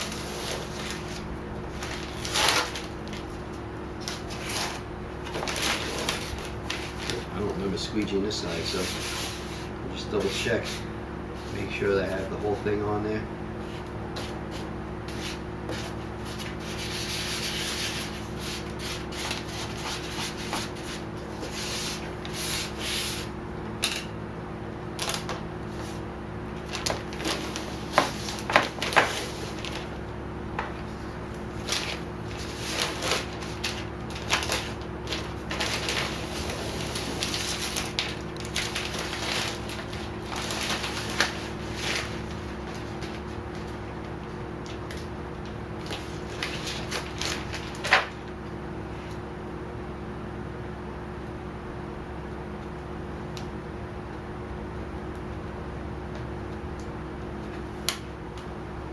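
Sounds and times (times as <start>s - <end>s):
squeegee rubbing over vinyl film: 0.0s - 3.3s, 8.4s - 12.6s, 13.6s - 23.4s, 25.0s - 29.9s, 30.9s - 43.7s.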